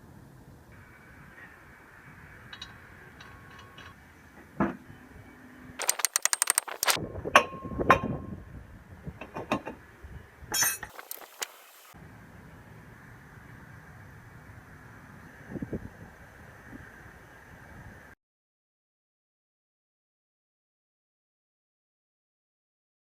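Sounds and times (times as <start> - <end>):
metal tools clinking: 5.8 - 7.0, 10.9 - 12.0
quick run of clicks: 5.8 - 7.0, 10.9 - 12.0.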